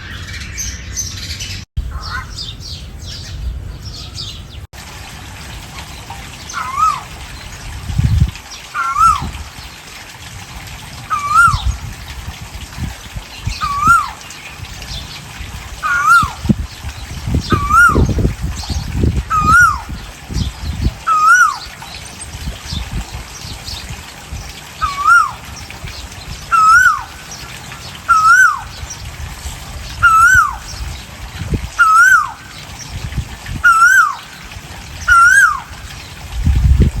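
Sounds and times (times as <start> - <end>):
bird whistled call: 6.6 - 7.0, 8.8 - 9.3, 11.1 - 11.7, 13.6 - 14.2, 15.8 - 16.4, 17.5 - 18.2, 19.3 - 19.9, 21.1 - 21.7, 24.8 - 25.4, 26.5 - 27.1, 28.1 - 28.7, 30.0 - 30.7, 31.8 - 32.5, 33.6 - 34.2, 35.1 - 35.7.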